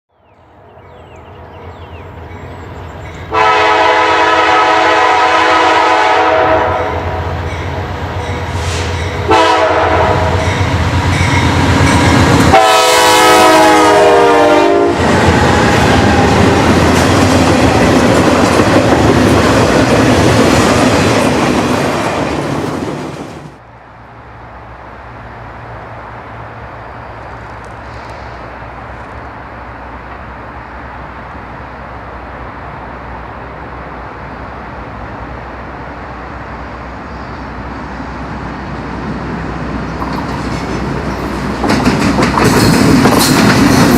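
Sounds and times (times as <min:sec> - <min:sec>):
train engine and wheels on rails: 0:00.1 - 0:43.9
locomotive air horn blasts: 0:03.3 - 0:07.4, 0:08.4 - 0:10.7, 0:12.4 - 0:16.8.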